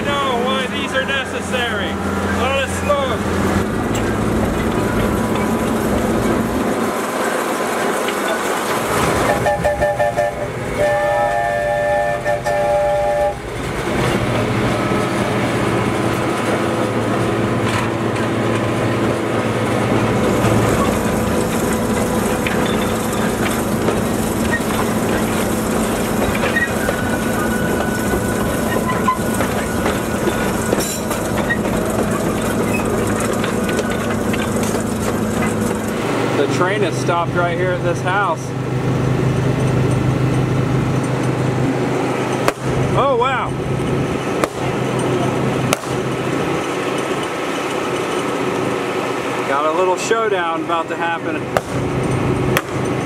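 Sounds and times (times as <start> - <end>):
train rumbling on track: 0.0 - 53.0
train whistle toots: 9.3 - 13.4.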